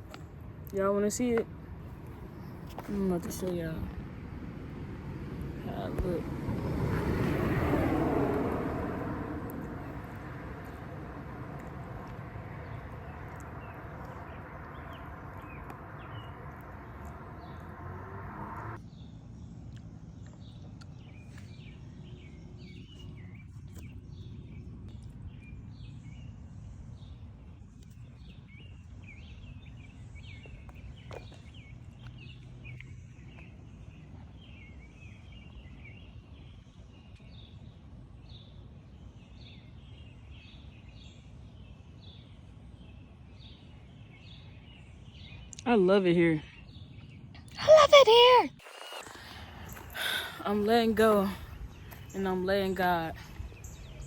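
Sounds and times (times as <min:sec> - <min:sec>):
low outdoor rumble: 0:00.0 - 0:35.1, 0:46.5 - 0:54.0
small birds chirping: 0:08.9 - 0:54.0.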